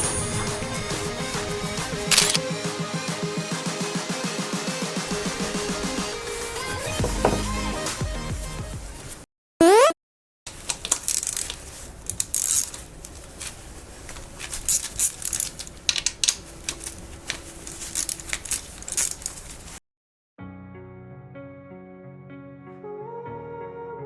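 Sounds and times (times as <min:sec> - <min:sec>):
loud rising tone: 0:09.6 - 0:10.0.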